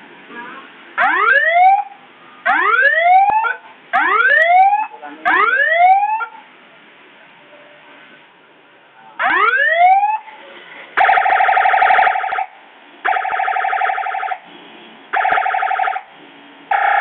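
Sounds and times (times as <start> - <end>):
electronic siren whooping: 1.0 - 6.4.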